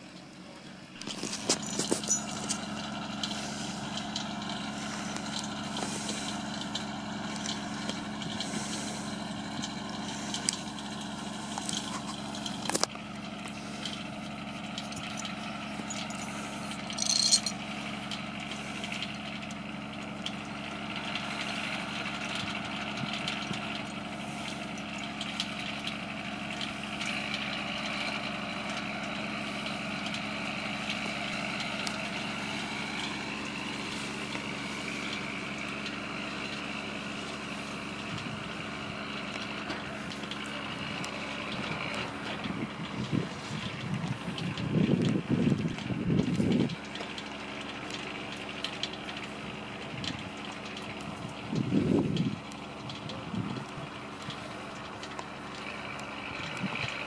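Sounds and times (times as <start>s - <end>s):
vehicle engine idling: 0.0s - 57.0s.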